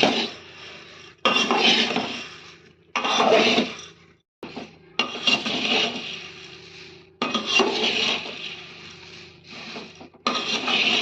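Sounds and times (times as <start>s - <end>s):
spoon scraping pan: 0.0s - 11.0s.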